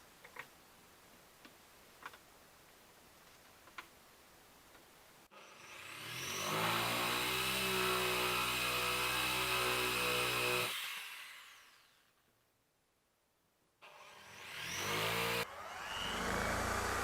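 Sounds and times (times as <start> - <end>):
power tool motor whining: 13.8 - 17.0.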